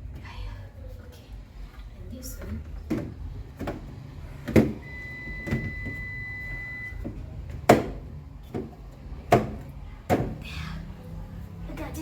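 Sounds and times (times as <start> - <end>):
plastic fridge parts knocking: 2.4 - 4.8, 7.0 - 10.4.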